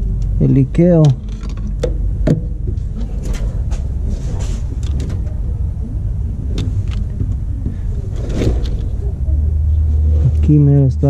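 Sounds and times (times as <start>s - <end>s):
handling clicks and knocks: 1.0s - 3.9s.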